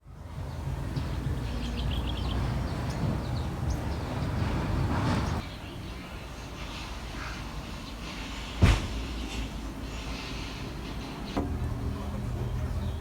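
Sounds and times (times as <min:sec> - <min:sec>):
bird chirping: 0:00.4 - 0:05.9
low vehicle rumble: 0:09.0 - 0:13.0.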